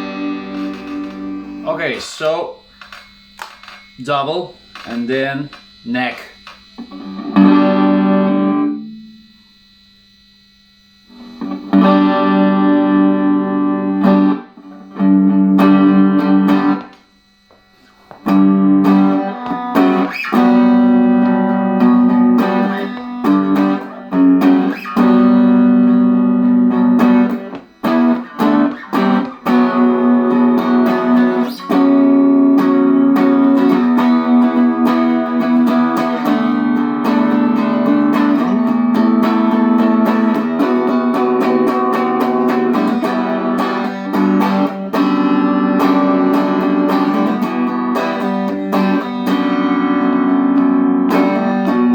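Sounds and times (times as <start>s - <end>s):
electric guitar strummed chords: 0.0s - 51.9s.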